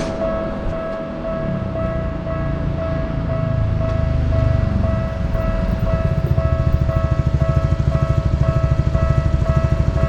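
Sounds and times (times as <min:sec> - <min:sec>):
railroad crossing bell ringing: 0:00.0 - 0:10.0
train rumbling: 0:00.0 - 0:10.0.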